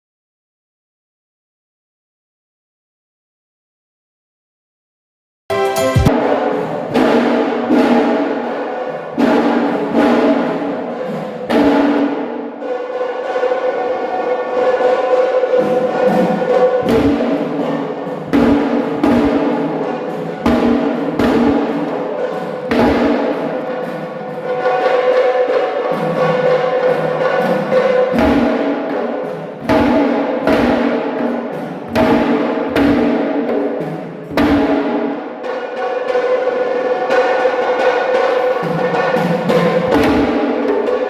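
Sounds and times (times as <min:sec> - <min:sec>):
deep drum beats: 0:16.8 - 0:24.9, 0:28.1 - 0:35.2.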